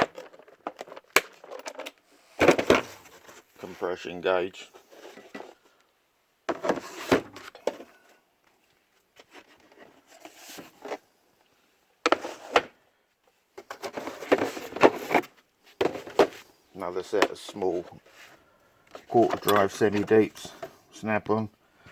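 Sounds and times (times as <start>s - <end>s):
tools clattering: 19.1s - 20.6s.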